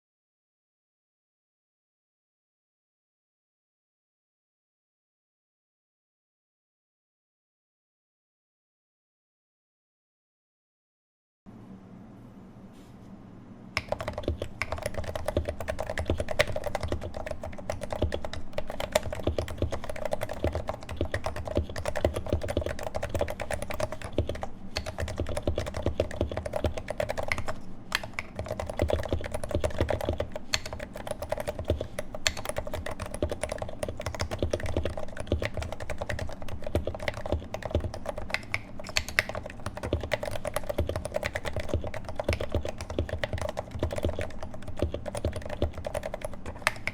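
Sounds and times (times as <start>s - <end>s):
faint hum: 11.5s - 46.9s
muted keyboard typing: 13.8s - 46.9s.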